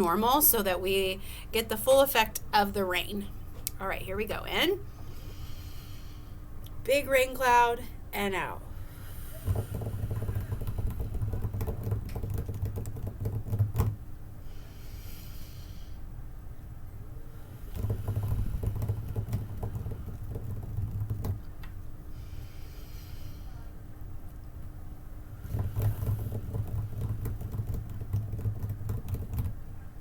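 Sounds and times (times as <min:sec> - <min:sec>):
fingertips drumming on a desk: 0:09.4 - 0:14.0, 0:17.7 - 0:21.5, 0:25.4 - 0:29.7.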